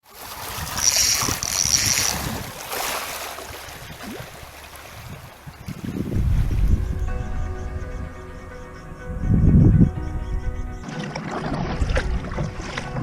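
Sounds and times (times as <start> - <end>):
sea water splashing against kayak: 0.0 - 6.9, 10.8 - 13.0
wind buffeting microphone: 0.4 - 2.7, 3.4 - 10.8.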